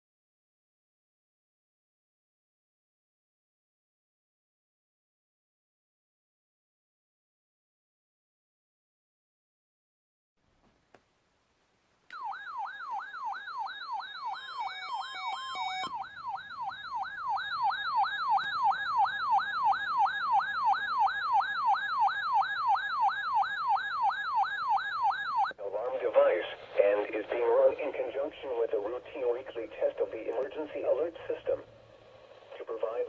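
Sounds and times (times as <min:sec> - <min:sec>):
alarm siren wailing: 0:12.1 - 0:25.6.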